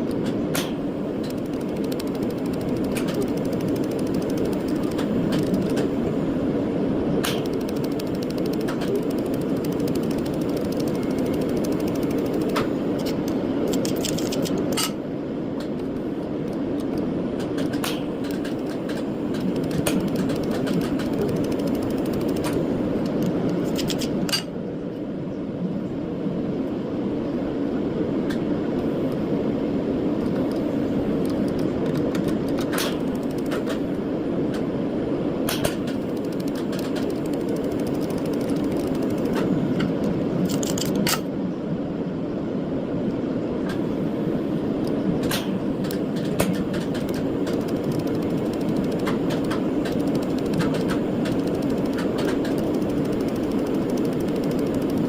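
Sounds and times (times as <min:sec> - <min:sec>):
sharp clicks: 0:00.0 - 0:06.0, 0:07.2 - 0:14.9, 0:15.6 - 0:24.4, 0:30.2 - 0:33.9, 0:35.5 - 0:41.3, 0:44.8 - 0:55.0
machine hum: 0:00.0 - 0:25.0, 0:28.6 - 0:55.0.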